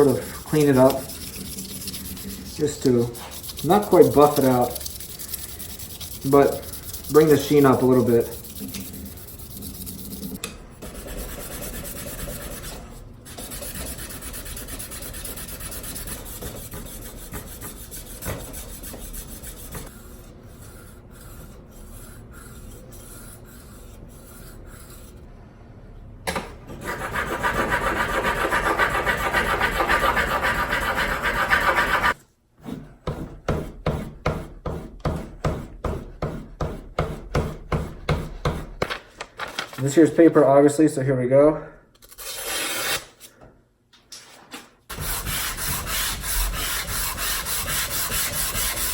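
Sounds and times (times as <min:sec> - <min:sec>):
sandpaper rubbing on metal: 0:00.0 - 0:20.0, 0:26.9 - 0:32.2, 0:44.9 - 0:48.9.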